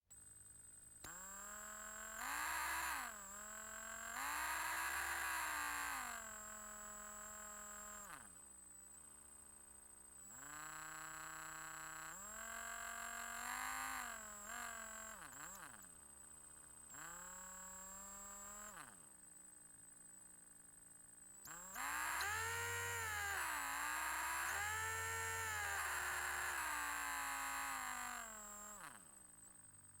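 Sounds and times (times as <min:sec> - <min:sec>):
electric drill whining: 0:01.0 - 0:08.2, 0:10.3 - 0:15.8, 0:16.9 - 0:18.9, 0:21.5 - 0:29.0.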